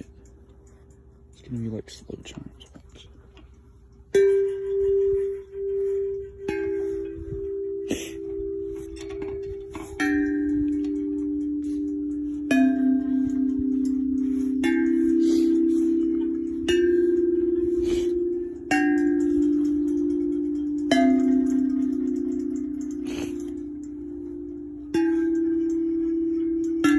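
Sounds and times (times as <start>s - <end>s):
metal chime tubes ringing: 0.0s - 26.9s.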